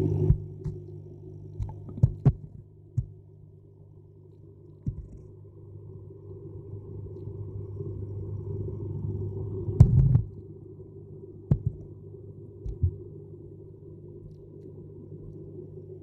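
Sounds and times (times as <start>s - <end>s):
low rumbling hum: 0.0s - 16.0s
sharp knocks or pops: 11.5s - 11.8s.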